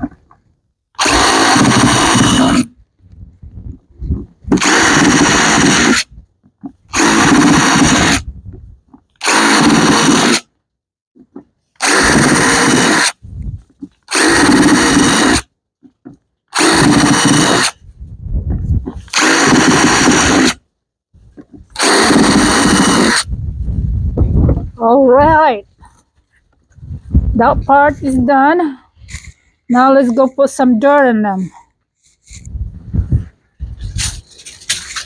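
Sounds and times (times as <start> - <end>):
electric drill running: 1.0 - 2.6, 4.6 - 6.0, 9.2 - 10.4, 11.8 - 13.2, 14.1 - 15.4, 16.6 - 17.7, 21.8 - 23.2.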